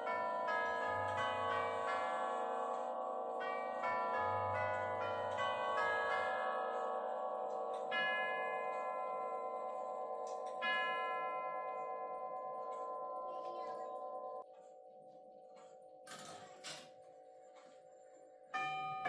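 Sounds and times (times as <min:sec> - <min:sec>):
clock chime ringing: 0:00.0 - 0:14.4.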